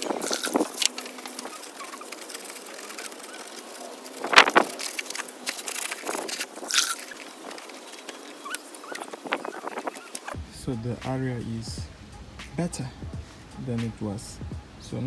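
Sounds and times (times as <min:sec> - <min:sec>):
wiping and handling: 0:00.0 - 0:10.4.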